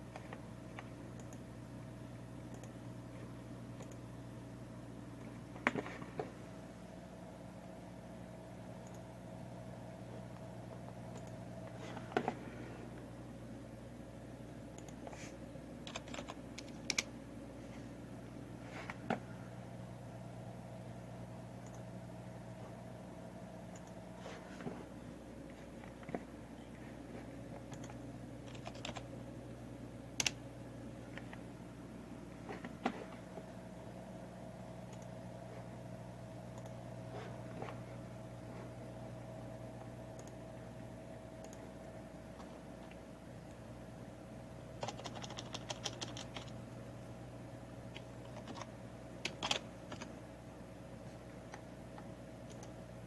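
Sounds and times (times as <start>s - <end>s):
steady low hum: 0.0s - 53.0s
keyboard keystrokes: 15.8s - 17.1s, 27.7s - 29.1s, 30.2s - 30.4s, 44.8s - 46.6s, 47.9s - 50.1s.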